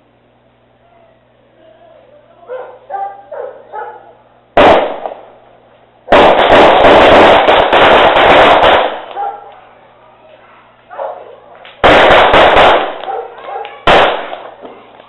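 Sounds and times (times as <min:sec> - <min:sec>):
loud rapid crackling volley: 0:04.6 - 0:05.4, 0:06.1 - 0:09.7, 0:11.5 - 0:15.0.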